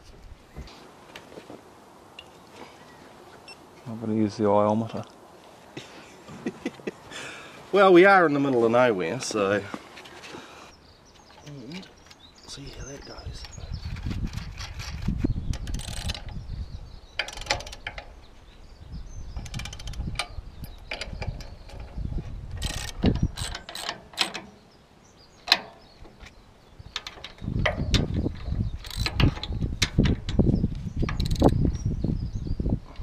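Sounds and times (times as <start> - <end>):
ratchet clicking: 15.6 - 16.3, 17.2 - 18.0, 19.4 - 20.3, 22.6 - 24.4, 28.8 - 29.6, 31.1 - 31.5.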